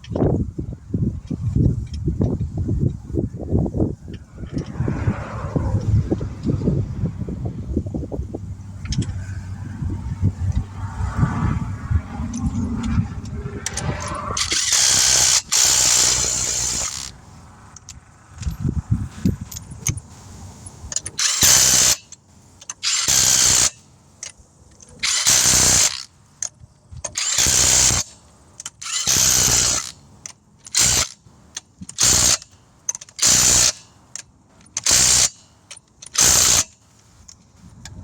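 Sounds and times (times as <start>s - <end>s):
rattle of clicks: 8.8s - 9.3s
cordless impact driver bursts: 13.8s - 17.2s, 21.2s - 22.1s, 22.8s - 23.8s, 25.0s - 26.1s, 27.2s - 28.2s, 28.8s - 30.0s, 30.7s - 31.2s, 31.9s - 32.5s, 33.2s - 33.8s, 34.8s - 35.4s, 36.1s - 36.8s.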